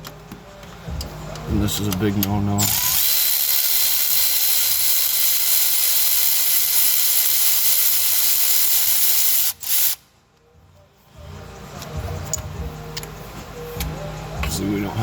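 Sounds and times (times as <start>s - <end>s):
compressed air hissing: 3.2s - 10.0s.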